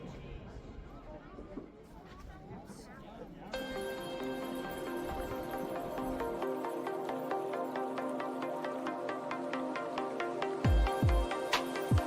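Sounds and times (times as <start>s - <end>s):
fast ticking beat: 10.6s - 12.0s
deep kick drum: 10.7s - 11.3s.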